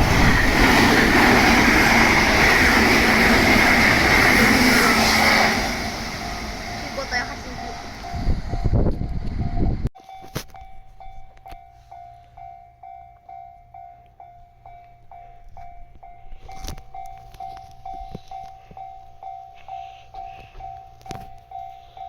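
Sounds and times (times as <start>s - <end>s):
level crossing alarm dinging: 0.0s - 8.9s.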